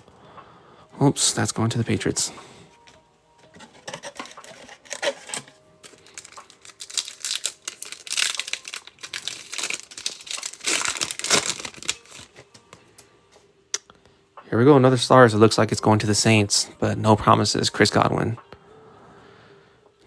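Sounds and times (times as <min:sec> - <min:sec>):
foil wrapper crinkling and tearing: 0:03.6 - 0:12.6.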